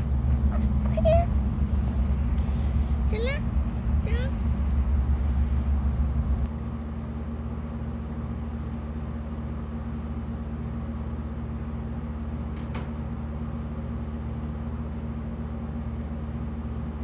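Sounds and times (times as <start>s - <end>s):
low rumble: 0.0s - 6.5s
low mechanical hum: 0.0s - 17.0s.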